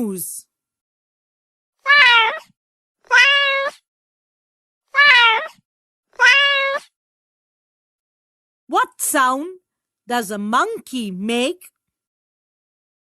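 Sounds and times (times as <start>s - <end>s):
cat meowing: 1.8s - 3.9s, 4.9s - 7.0s.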